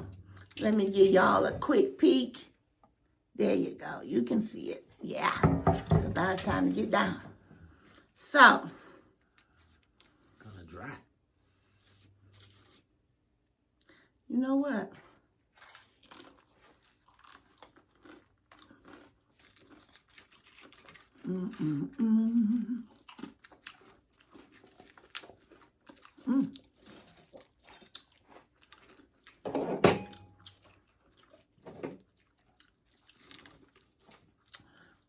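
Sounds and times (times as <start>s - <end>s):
wet chewing: 0.0s - 1.4s, 8.9s - 10.6s, 11.5s - 13.0s, 15.0s - 29.4s, 30.1s - 35.0s
crunching chips: 15.5s - 29.4s.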